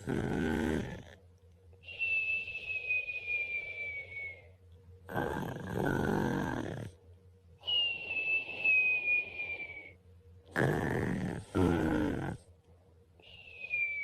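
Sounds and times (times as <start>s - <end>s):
man snoring: 0.0s - 1.1s, 5.1s - 6.9s, 10.6s - 12.4s
whistling breath: 1.8s - 4.6s, 7.6s - 10.1s, 13.2s - 14.0s.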